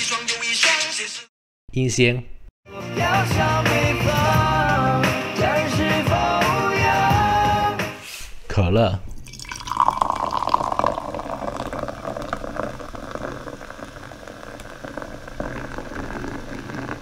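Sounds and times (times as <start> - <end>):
cola fizzing: 9.2 - 17.0.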